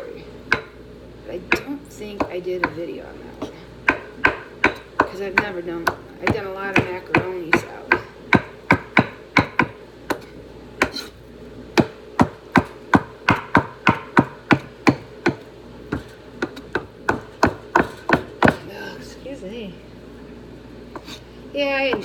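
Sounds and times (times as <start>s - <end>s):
knife chopping on cutting board: 0.5s - 0.8s, 3.4s - 11.2s, 11.8s - 18.7s, 20.9s - 21.2s.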